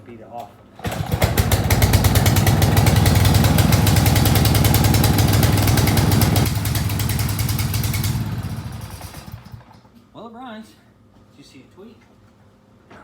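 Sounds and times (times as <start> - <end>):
small gas engine running rough: 0.8 - 9.9.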